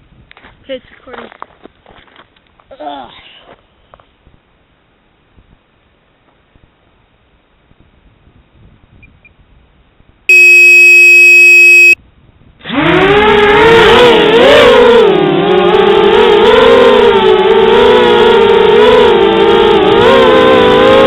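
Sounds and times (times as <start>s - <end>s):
loud steady beep: 10.3s - 12.0s.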